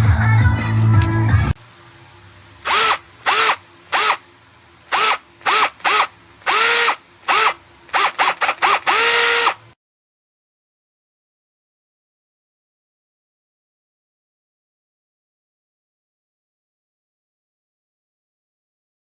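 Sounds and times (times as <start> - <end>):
cordless drill motor whine: 2.6 - 4.2, 4.9 - 9.7.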